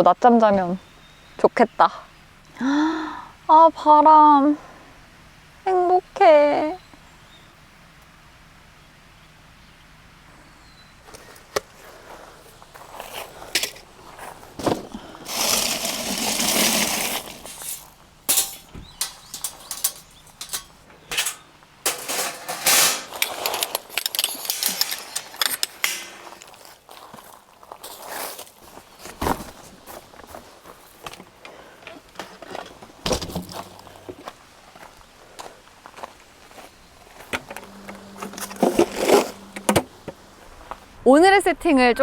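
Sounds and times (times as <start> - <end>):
rustling: 12.8 - 34.3
sharp clicks and knocks: 18.3 - 26.5.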